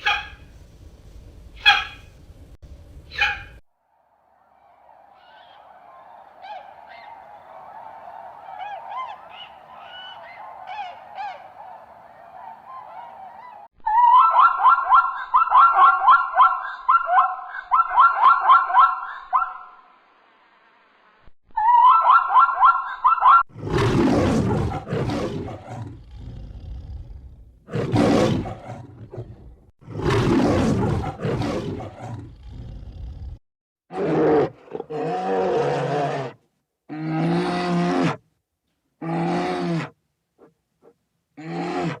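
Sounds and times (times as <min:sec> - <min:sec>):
pitched animal calls: 0:01.6 - 0:02.1, 0:03.1 - 0:03.6
deep animal roars: 0:23.5 - 0:36.3.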